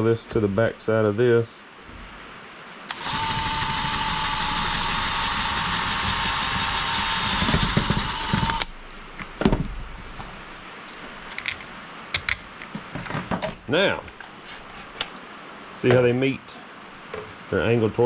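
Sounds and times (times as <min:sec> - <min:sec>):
power drill boring a hole: 0:02.9 - 0:08.7.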